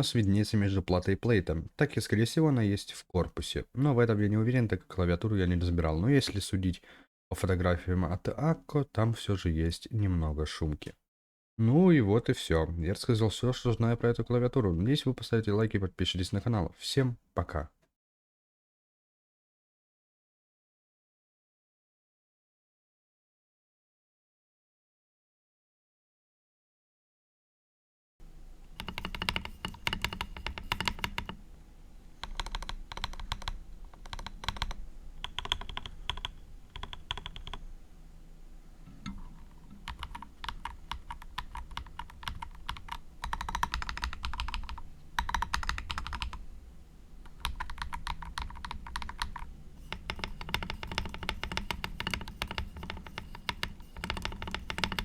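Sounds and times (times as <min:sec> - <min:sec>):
mechanical keyboard typing: 0:28.8 - 0:31.4, 0:32.2 - 0:37.6, 0:39.8 - 0:46.4, 0:47.3 - 0:55.0.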